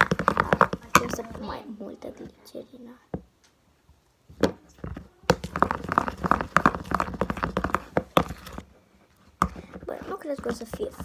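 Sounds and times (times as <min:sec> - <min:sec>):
utensil tapping and squishing slime: 0:00.0 - 0:01.6, 0:04.2 - 0:11.0.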